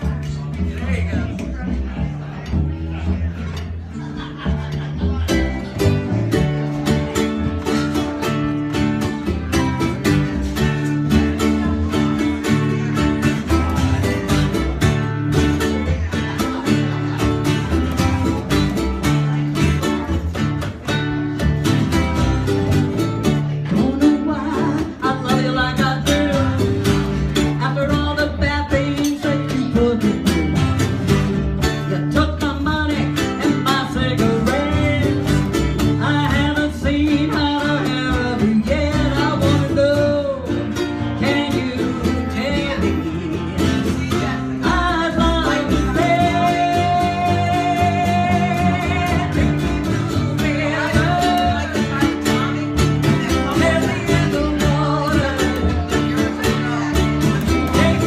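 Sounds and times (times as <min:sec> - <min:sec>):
guitar: 0:00.0 - 0:58.0
person singing: 0:22.0 - 0:58.0.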